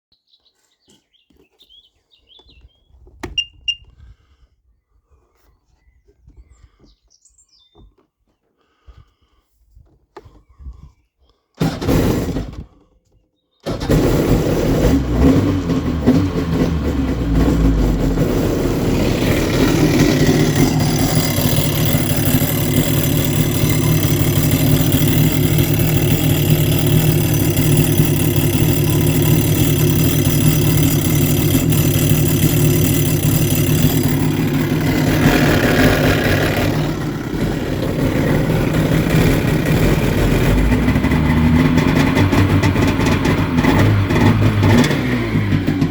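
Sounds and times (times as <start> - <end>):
jet ski engine idling: 13.7 - 45.9.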